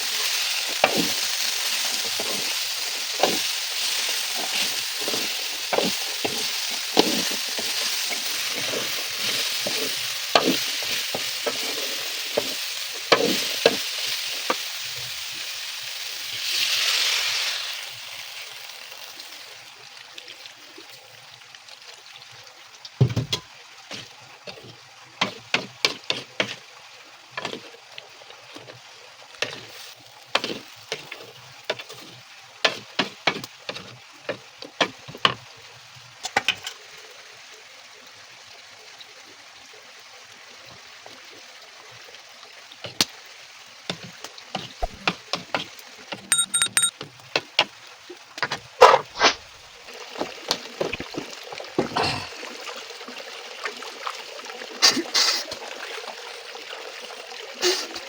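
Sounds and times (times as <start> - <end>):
food sizzling in oil: 0.0 - 19.9, 23.0 - 35.4.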